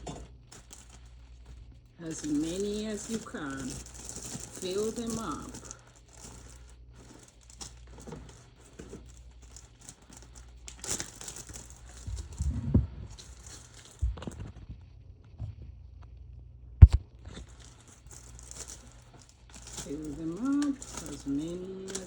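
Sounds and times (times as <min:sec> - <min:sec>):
plastic bags crinkling: 0:00.0 - 0:12.5, 0:13.1 - 0:14.5, 0:17.2 - 0:22.0
dull thumps: 0:16.8 - 0:17.0
sharp knock: 0:16.8 - 0:17.0.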